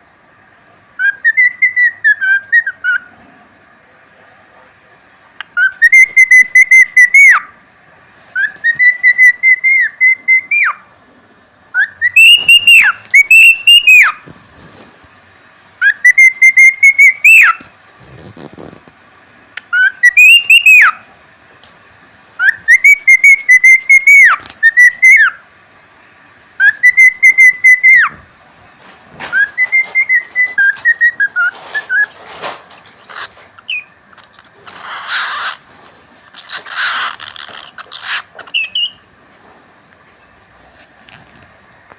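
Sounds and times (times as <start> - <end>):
cockatiel whistling song phrase: 11.8 - 14.2, 15.8 - 17.6, 19.8 - 21.0, 26.6 - 28.1.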